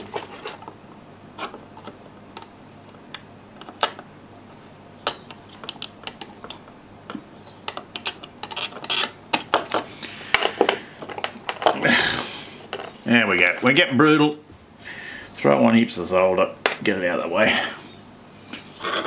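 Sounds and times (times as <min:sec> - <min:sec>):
small tools clicking and tapping: 0:05.0 - 0:11.8.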